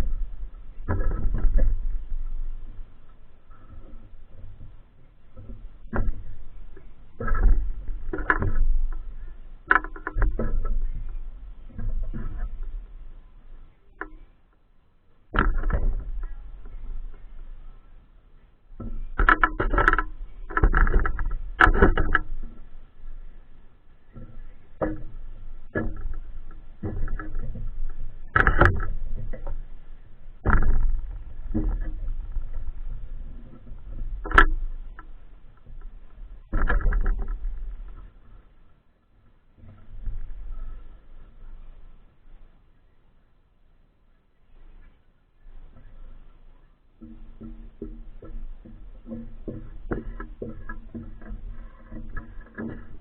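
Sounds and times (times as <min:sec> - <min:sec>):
wind rumbling on microphone: 0:00.0 - 0:14.4, 0:15.3 - 0:42.9, 0:44.4 - 0:53.0
mount clicking and rattling: 0:44.8 - 0:53.0.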